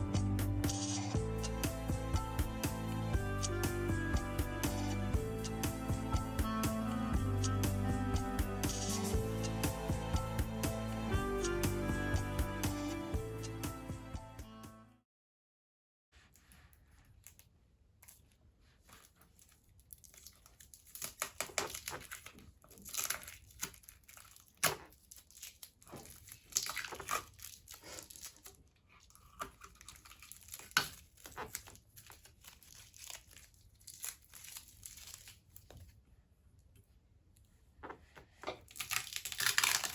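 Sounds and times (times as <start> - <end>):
packaging being torn and crumpled: 19.3 - 35.9, 38.7 - 39.9.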